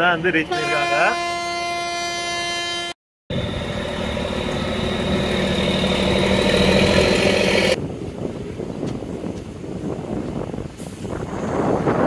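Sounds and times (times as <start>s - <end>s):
locomotive engine running: 3.3s - 7.8s
rushing noise of moving train: 3.3s - 12.0s.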